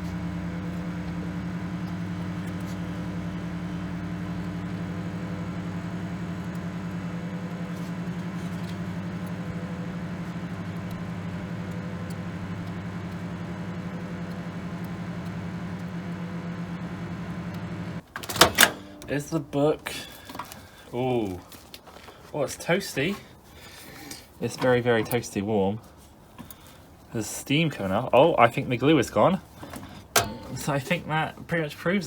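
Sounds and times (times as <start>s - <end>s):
microwave oven hum: 0.0s - 19.7s, 30.0s - 30.8s.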